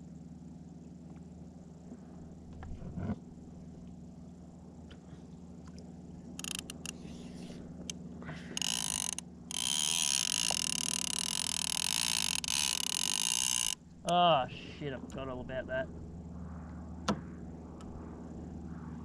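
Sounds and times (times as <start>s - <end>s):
steady low hum: 0.0s - 19.0s
fishing reel clicker screaming: 6.4s - 7.2s, 8.5s - 13.8s.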